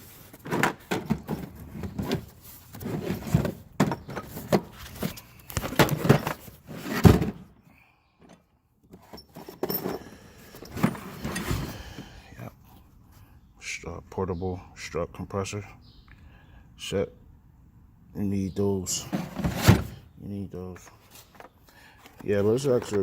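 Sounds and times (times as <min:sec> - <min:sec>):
metal tools clinking in drawer: 0:09.0 - 0:11.7.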